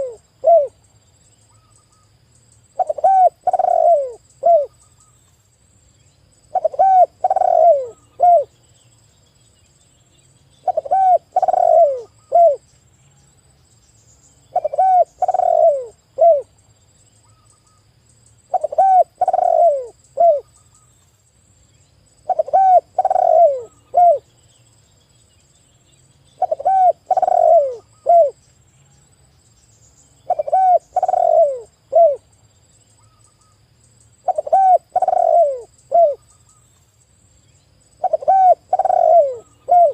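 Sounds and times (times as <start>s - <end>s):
dove cooing: 0.0s - 0.8s, 2.8s - 4.7s, 6.5s - 8.5s, 10.6s - 12.6s, 14.5s - 16.5s, 18.5s - 20.5s, 22.2s - 24.3s, 26.4s - 28.4s, 30.2s - 32.2s, 34.2s - 36.2s, 38.0s - 39.9s.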